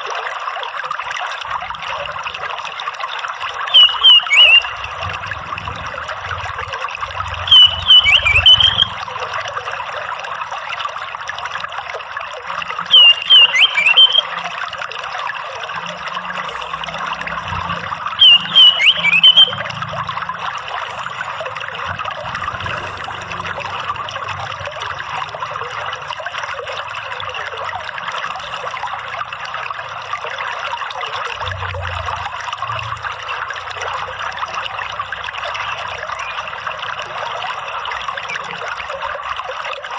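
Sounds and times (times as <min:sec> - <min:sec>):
trickling running water: 0:00.0 - 0:39.9
thrush calls: 0:03.6 - 0:05.4, 0:06.0 - 0:09.4, 0:12.8 - 0:14.7, 0:15.6 - 0:24.4.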